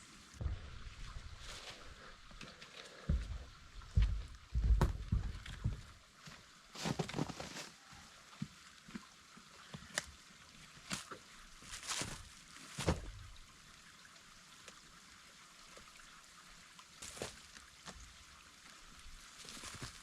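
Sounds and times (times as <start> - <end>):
wood knocking and cracking: 4.0 - 5.9
dull thump: 4.6 - 5.7.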